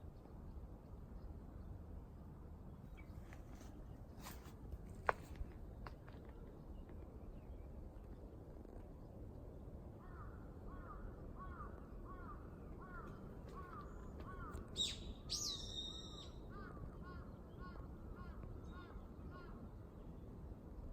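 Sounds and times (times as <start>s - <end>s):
low background noise: 0.0s - 20.9s
high sweeping bird call: 14.4s - 16.5s
bird whistled calls: 14.8s - 16.4s.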